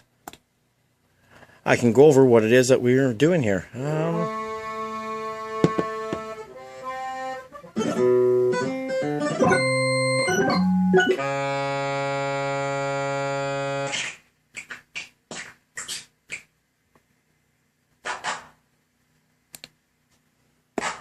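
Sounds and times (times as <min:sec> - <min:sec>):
electronic notes and chords: 0:04.2 - 0:14.2.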